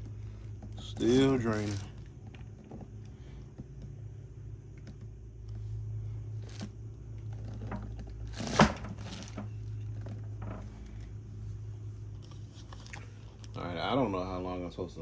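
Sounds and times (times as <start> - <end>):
handling clicks and crinkling: 0.0 - 4.0
steady low hum: 0.0 - 15.0.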